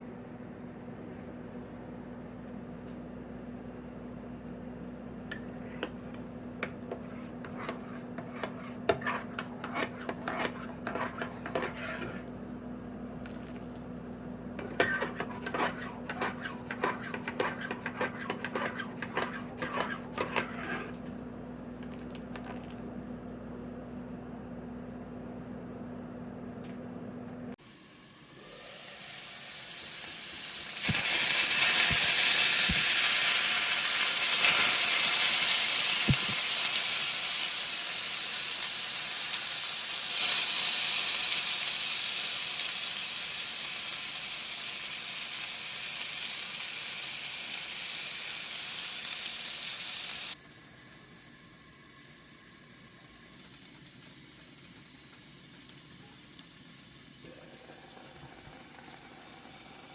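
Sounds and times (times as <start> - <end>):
food sizzling in a frying pan: 27.6 - 59.9.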